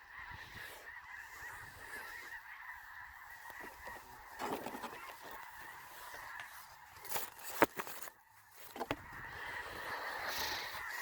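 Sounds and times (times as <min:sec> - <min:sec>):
geese honking in chorus: 0:00.0 - 0:11.0.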